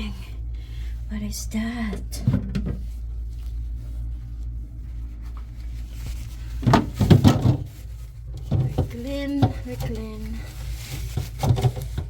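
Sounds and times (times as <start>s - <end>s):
steady low hum: 0.0s - 12.0s
clatter of knocks and bumps: 6.6s - 10.0s, 10.9s - 12.0s.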